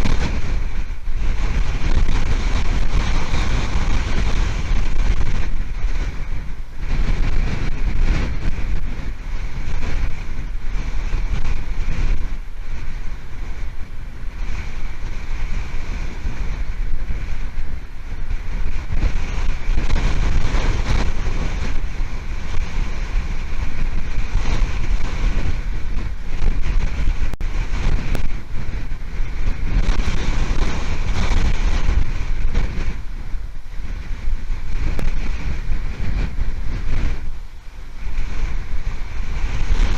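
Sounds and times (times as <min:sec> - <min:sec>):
wind buffeting microphone: 0:00.0 - 0:39.9.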